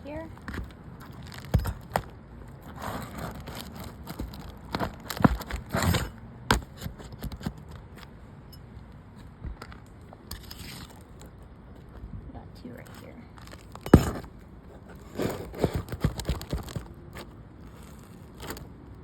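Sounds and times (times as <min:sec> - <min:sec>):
nail puller scraping shingles: 0:00.4 - 0:07.8, 0:13.4 - 0:18.6.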